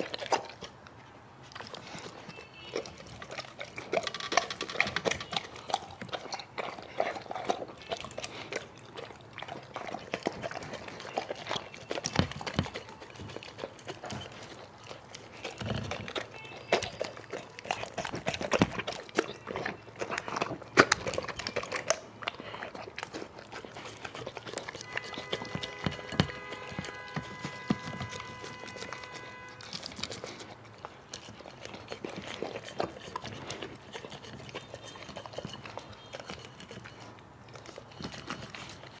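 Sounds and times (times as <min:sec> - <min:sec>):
dog chomping and crunching: 0:00.0 - 0:39.0
steady multi-pitch tone: 0:24.9 - 0:29.7.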